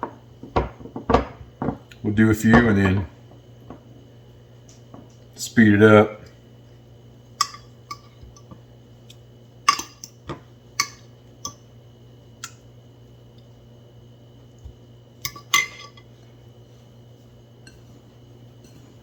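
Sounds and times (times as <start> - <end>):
faint steady hum: 0.0 - 19.0
dishes and utensils clinking: 15.3 - 16.1.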